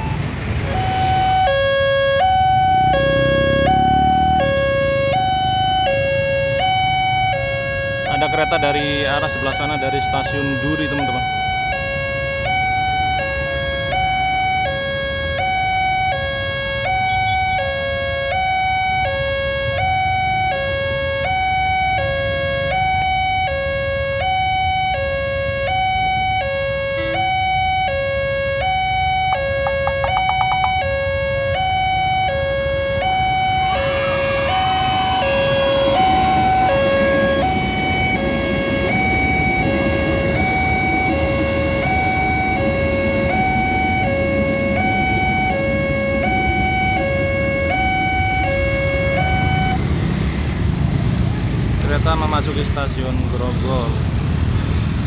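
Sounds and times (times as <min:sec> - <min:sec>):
level crossing two-tone siren: 0:00.0 - 0:50.4
train rumble: 0:33.2 - 0:55.0.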